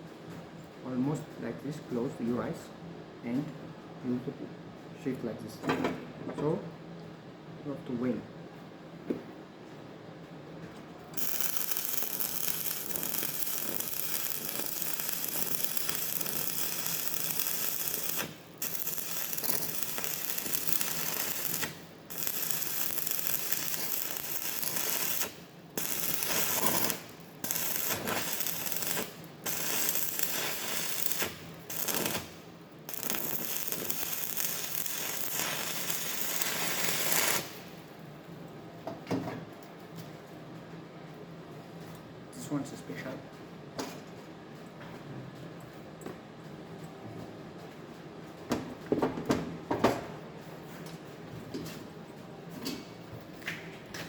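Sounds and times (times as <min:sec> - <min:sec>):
welding arc crackling: 0:11.2 - 0:37.9.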